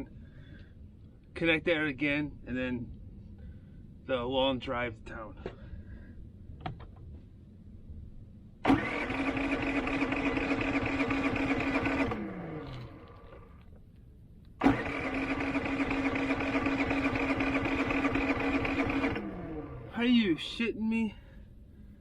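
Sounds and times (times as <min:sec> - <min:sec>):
generator engine running: 0:08.6 - 0:13.7, 0:14.6 - 0:20.1.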